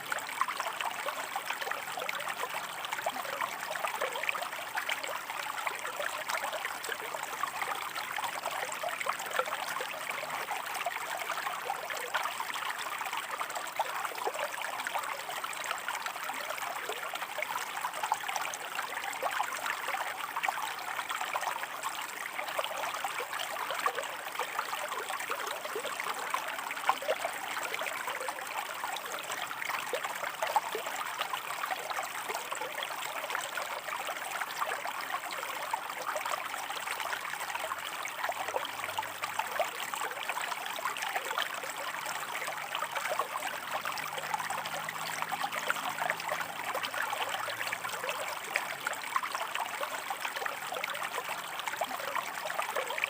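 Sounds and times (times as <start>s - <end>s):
stream burbling over rocks: 0.0s - 53.0s.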